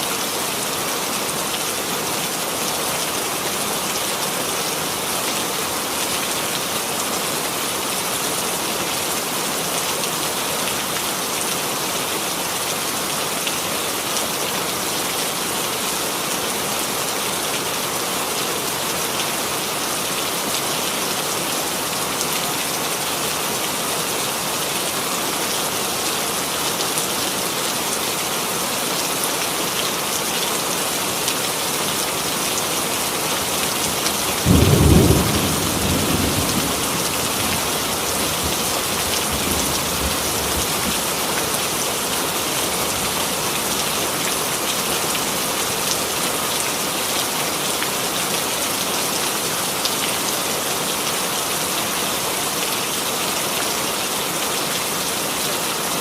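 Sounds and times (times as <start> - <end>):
steady rain: 0.0 - 56.0
thunder clap and rumble: 34.5 - 40.7.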